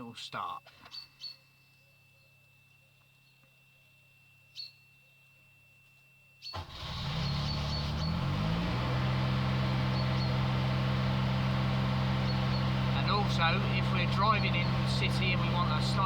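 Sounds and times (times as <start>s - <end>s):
refrigeration unit engine starting: 6.6s - 16.0s.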